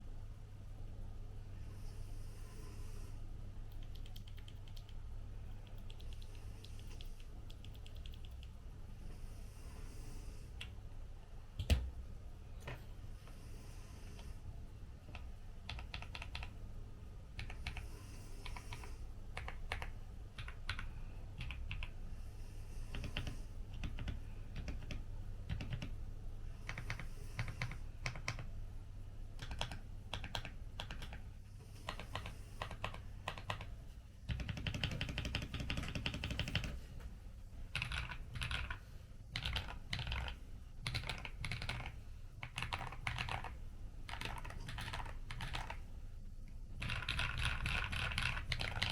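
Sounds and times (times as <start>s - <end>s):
mechanical keyboard typing: 3.7s - 5.0s, 5.6s - 8.6s, 15.1s - 16.5s, 17.4s - 17.8s, 18.4s - 22.0s, 22.9s - 26.0s, 26.6s - 28.5s, 29.4s - 31.2s, 31.8s - 33.7s, 34.3s - 36.8s, 37.7s - 45.8s, 46.8s - 48.9s.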